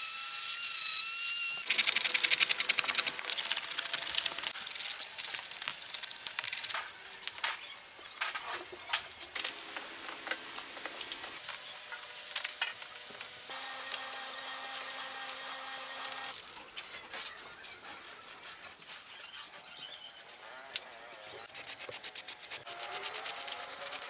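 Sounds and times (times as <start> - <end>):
rapid scraping and clicking: 1.6 - 6.8.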